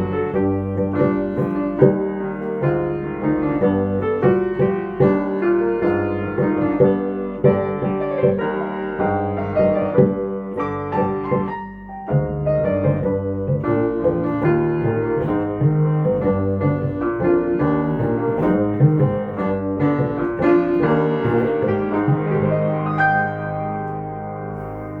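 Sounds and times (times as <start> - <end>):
bass notes: 0.0 - 25.0
jazz piano: 0.0 - 25.0.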